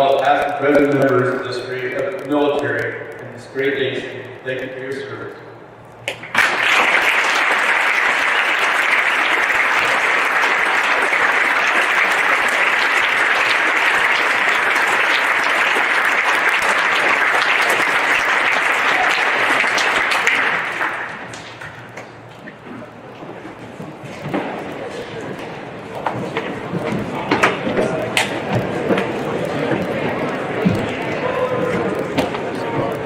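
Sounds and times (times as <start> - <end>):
audience clapping: 6.1 - 22.3, 24.3 - 33.0.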